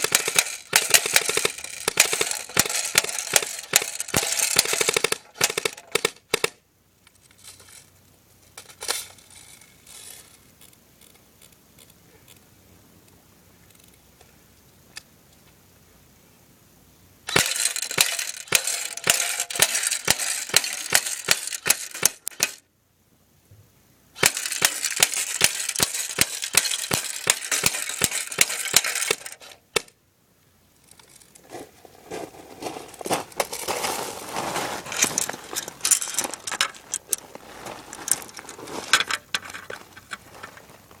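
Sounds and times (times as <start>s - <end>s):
airsoft gun rapid firing: 0.0s - 6.6s, 17.3s - 22.6s, 24.2s - 29.9s
irregular clattering: 0.0s - 6.6s, 17.3s - 22.6s, 24.2s - 29.9s, 30.8s - 40.8s
pellets clicking off a can: 0.0s - 6.6s, 17.3s - 22.6s, 24.2s - 29.9s.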